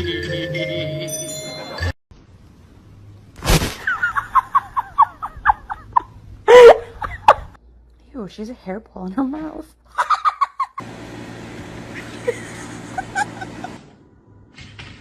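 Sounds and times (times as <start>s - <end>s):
background music: 0.0s - 1.9s.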